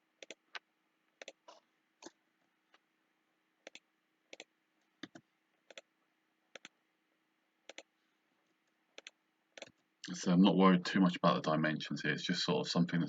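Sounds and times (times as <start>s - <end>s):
computer mouse clicking: 0.2s - 0.6s, 3.6s - 5.9s, 6.5s - 6.8s, 7.7s - 7.9s, 9.0s - 9.8s.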